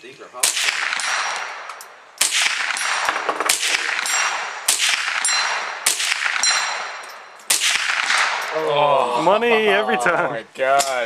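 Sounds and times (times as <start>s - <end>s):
gunshots with echo: 0.4s - 8.5s
bullet ringing on steel target: 3.8s - 7.6s.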